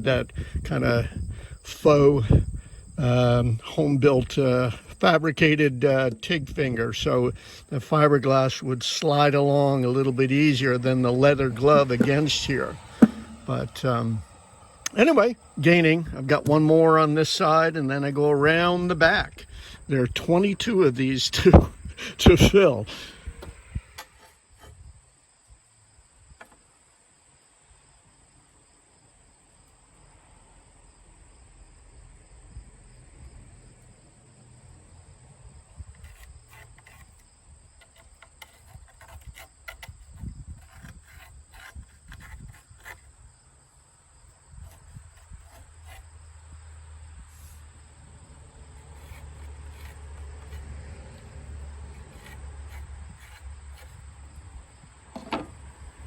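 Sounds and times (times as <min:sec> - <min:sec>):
insect chirring: 0:09.1 - 0:16.7.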